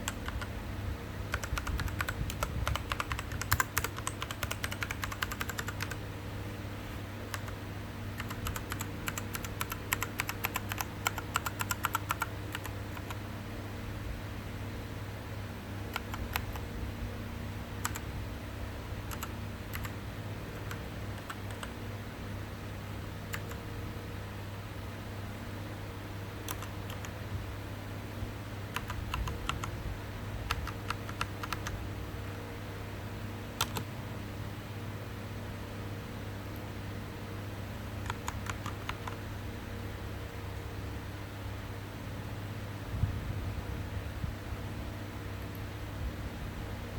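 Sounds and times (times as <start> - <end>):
steady low hum: 0.0 - 46.9
mechanical keyboard key clacks: 1.3 - 6.0, 8.2 - 13.2, 33.6 - 33.9.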